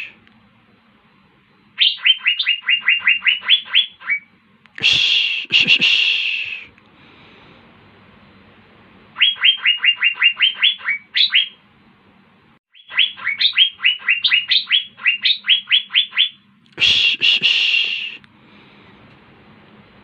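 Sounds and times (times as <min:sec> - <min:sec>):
harsh rasping bird call: 0:00.0 - 0:00.2, 0:01.8 - 0:06.7, 0:09.2 - 0:11.6, 0:12.7 - 0:18.2
bird whistling song: 0:01.7 - 0:04.3, 0:09.2 - 0:11.6, 0:12.7 - 0:16.4.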